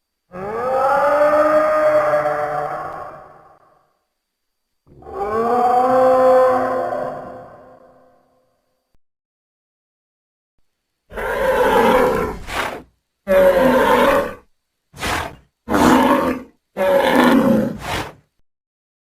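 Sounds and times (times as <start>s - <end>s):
dinosaur roars: 0.3s - 3.7s, 4.9s - 8.2s, 11.1s - 18.2s.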